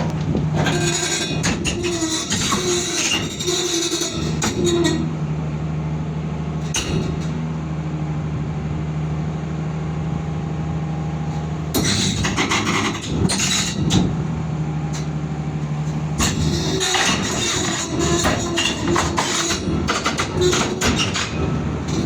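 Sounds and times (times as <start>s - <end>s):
diesel engine running: 0.0s - 22.0s
clattering and knocks: 16.2s - 22.0s.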